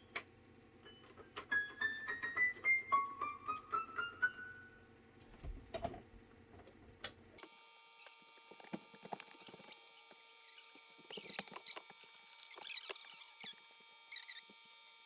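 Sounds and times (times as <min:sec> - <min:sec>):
keyboard ascending run of notes: 0:01.5 - 0:04.8.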